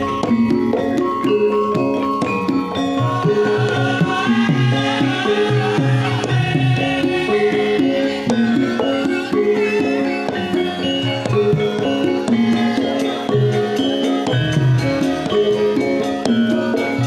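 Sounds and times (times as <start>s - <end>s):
metallophones ringing melody: 0.0s - 17.0s
person singing wavering: 3.0s - 10.8s, 11.4s - 14.5s.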